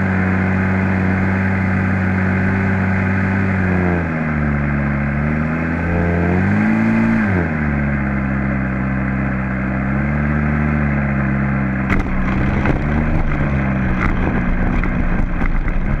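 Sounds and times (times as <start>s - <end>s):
model airplane engine running: 0.0s - 6.3s
knocks and rattles: 11.9s - 16.0s.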